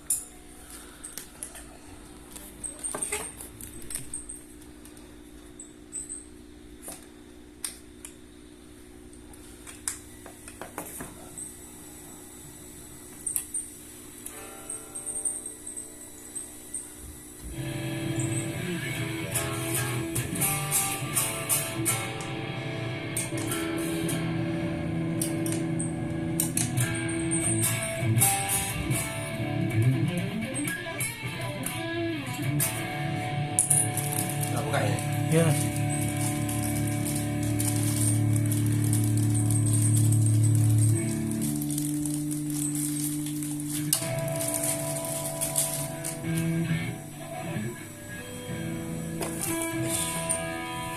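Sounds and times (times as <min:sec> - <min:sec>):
low electrical hum: 0:00.0 - 0:50.9
electric guitar notes: 0:17.4 - 0:50.9.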